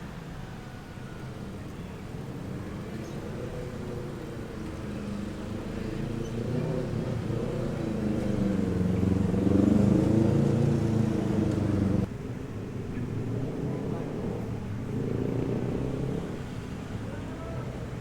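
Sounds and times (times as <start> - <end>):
vehicle engine running: 6.6 - 16.9.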